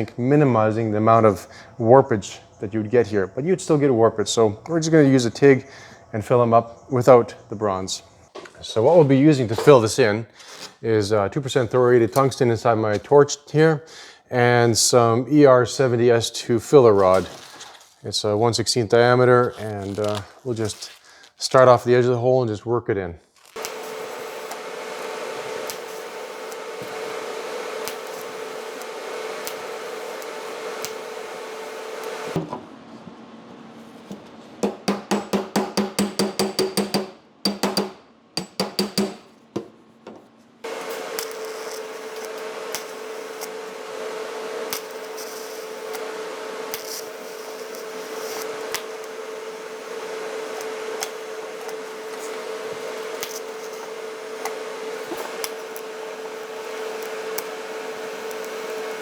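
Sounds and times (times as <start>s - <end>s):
welding arc buzzing: 23.5s - 32.4s, 40.6s - 59.0s
short sharp welding pulses: 23.6s - 32.4s, 40.6s - 59.0s.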